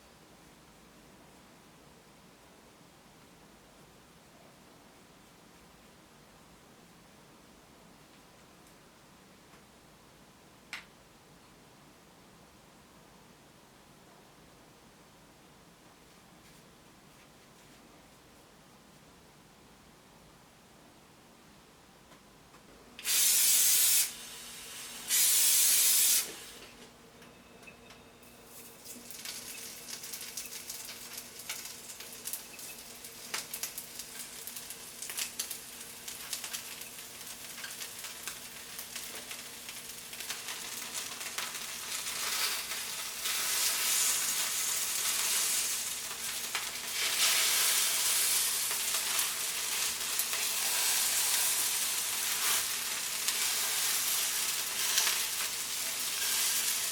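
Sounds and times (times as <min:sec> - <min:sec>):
meat sizzling in a frying pan: 0:23.0 - 0:26.6, 0:28.5 - 0:56.9
loud hisses: 0:23.0 - 0:26.7.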